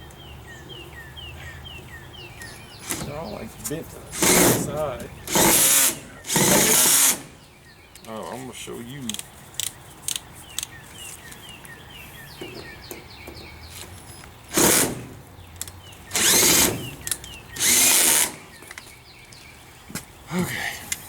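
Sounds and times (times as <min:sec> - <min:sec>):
power drill driving screws: 0:04.1 - 0:07.4, 0:14.5 - 0:15.1, 0:16.1 - 0:18.5.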